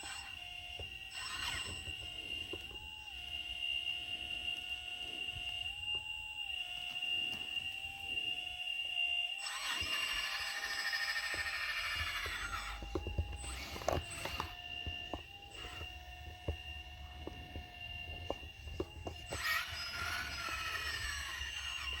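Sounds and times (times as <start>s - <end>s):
hydraulic pump whine: 0.0s - 22.0s
louder whirring: 0.0s - 22.0s
small clicks and knocks: 11.3s - 22.0s.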